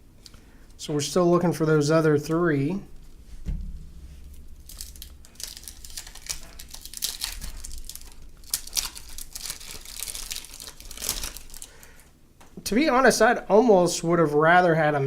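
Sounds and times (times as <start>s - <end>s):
wrapper crinkled and torn open: 4.6s - 12.0s.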